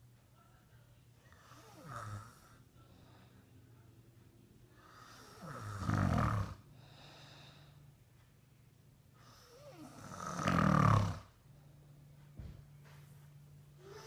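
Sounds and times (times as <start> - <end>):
man snoring: 1.4 - 2.6, 4.8 - 6.6, 9.3 - 11.4, 13.8 - 14.0.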